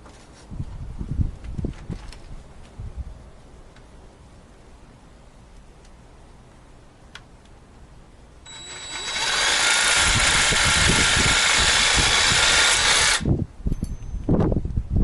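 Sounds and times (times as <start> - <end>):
jig saw cutting wood: 8.5 - 13.3.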